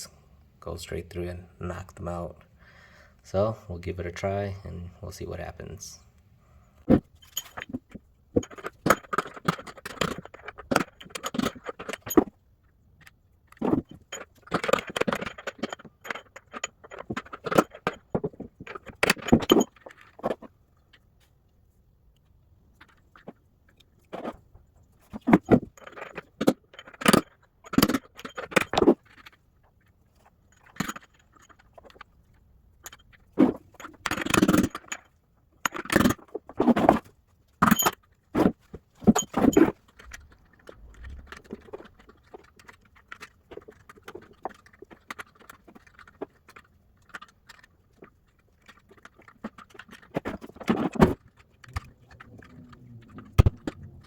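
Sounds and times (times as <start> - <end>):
metal clinking and scraping: 7.2 - 12.4, 13.6 - 20.5, 37.6 - 46.2, 47.0 - 54.0.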